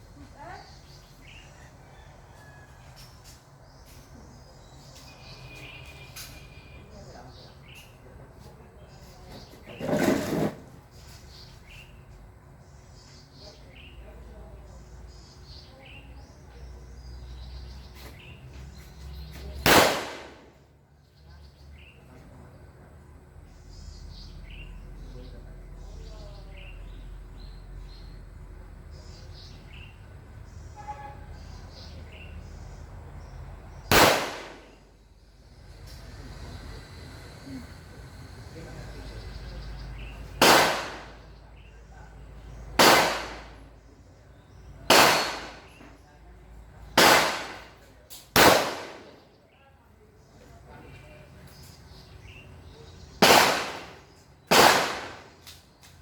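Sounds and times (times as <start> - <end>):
bird chirping: 0.0 - 10.0, 36.0 - 40.4
loud gunshot: 19.6 - 20.6, 33.9 - 34.8, 40.4 - 41.2, 42.8 - 43.6, 44.9 - 45.8, 47.0 - 47.8, 48.4 - 49.2, 53.2 - 55.3.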